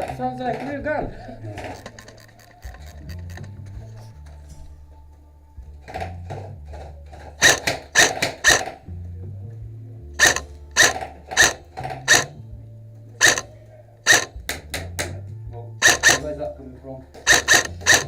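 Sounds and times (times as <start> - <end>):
background music: 0.0 - 18.0
airsoft gun shots: 7.4 - 8.8, 10.2 - 12.4, 13.2 - 13.5, 14.1 - 14.4, 15.8 - 16.3, 17.3 - 18.0.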